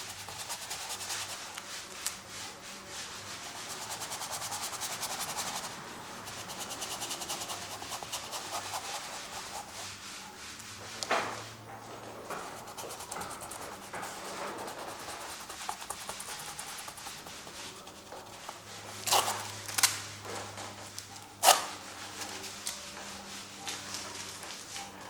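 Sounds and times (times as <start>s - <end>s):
sharp scrapes on canvas: 0.0s - 1.8s, 3.0s - 10.0s, 12.3s - 19.6s, 21.4s - 21.7s
scratchy paint strokes on canvas: 0.0s - 19.7s.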